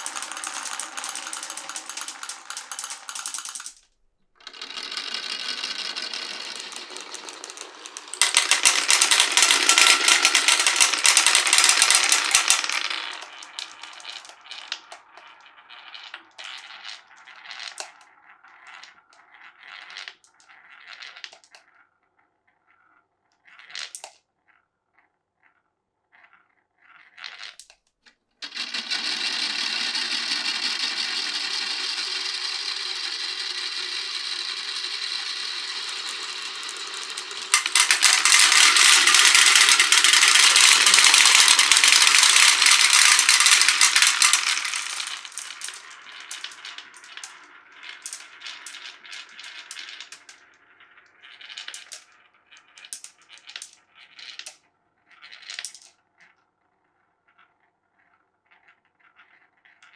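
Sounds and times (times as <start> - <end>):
marbles clattering on wooden run: 0.0 - 3.8, 4.4 - 18.0, 28.4 - 50.5, 51.2 - 54.5, 55.2 - 55.9.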